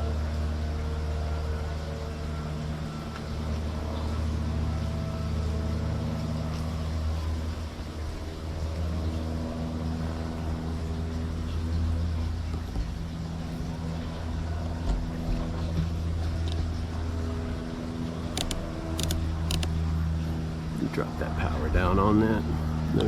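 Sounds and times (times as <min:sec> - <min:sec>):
motor humming: 0:18.4 - 0:20.0.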